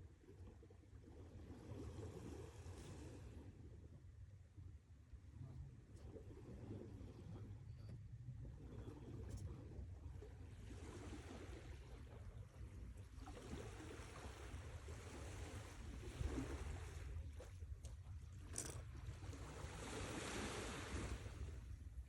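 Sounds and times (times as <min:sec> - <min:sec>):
sea waves washing in: 0:19.1 - 0:21.9.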